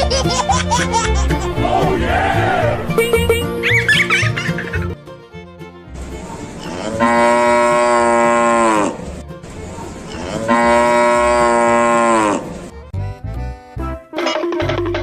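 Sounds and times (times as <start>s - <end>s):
cow mooing: 6.6s - 9.0s, 10.1s - 12.6s.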